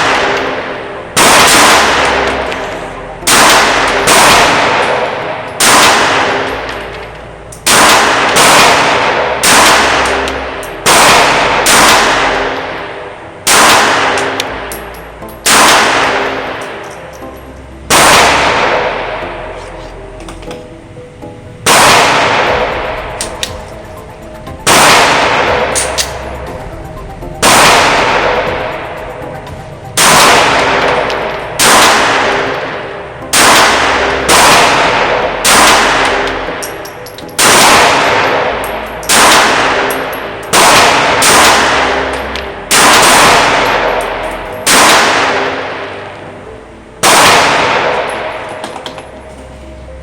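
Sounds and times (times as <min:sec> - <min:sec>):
pistol shots with ringing echo: 0:00.0 - 0:19.3, 0:21.6 - 0:26.4, 0:27.4 - 0:29.2, 0:30.0 - 0:46.2, 0:47.0 - 0:49.1.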